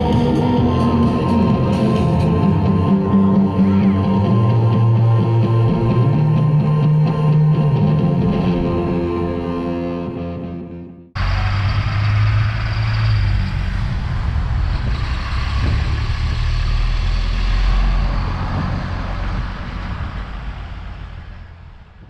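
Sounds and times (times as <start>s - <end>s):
heavy vehicle engine rumble: 0.0s - 9.6s, 11.2s - 22.0s
guitar music: 0.0s - 11.2s.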